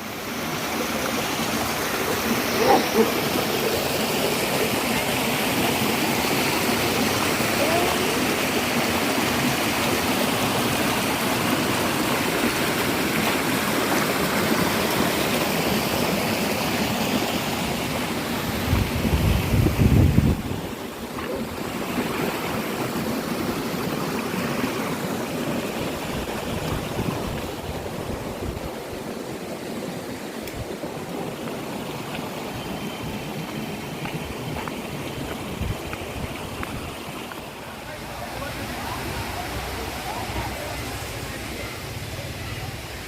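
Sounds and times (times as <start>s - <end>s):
waterfall rushing and splashing: 0.0s - 43.0s.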